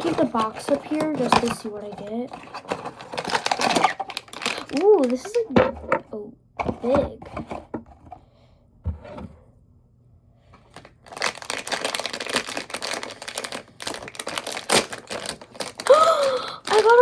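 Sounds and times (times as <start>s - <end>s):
plastic packaging crinkling: 0.0s - 5.6s, 10.7s - 17.0s.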